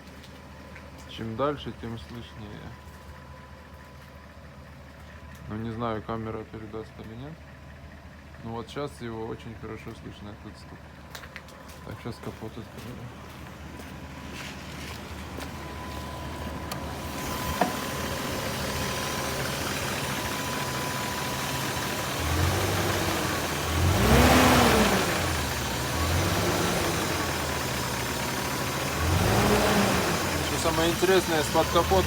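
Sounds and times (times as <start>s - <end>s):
engine throttle blips: 9.7s - 32.0s
car engine idling with knock: 9.8s - 32.0s.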